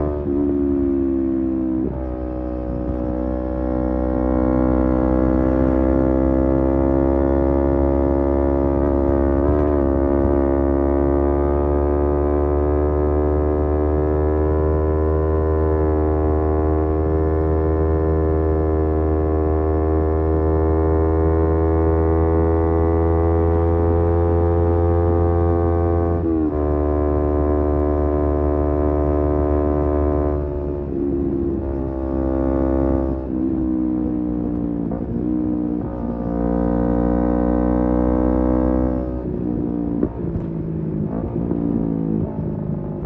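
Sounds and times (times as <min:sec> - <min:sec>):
motorcycle engine cruising: 0:00.0 - 0:43.0.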